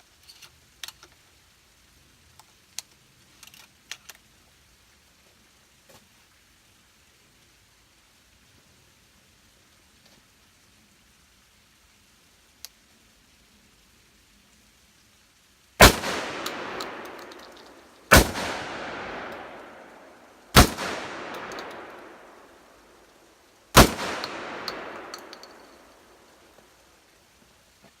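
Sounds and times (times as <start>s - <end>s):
shotgun shots echoing: 15.8s - 22.9s, 23.7s - 26.3s
light clicks: 23.9s - 25.9s.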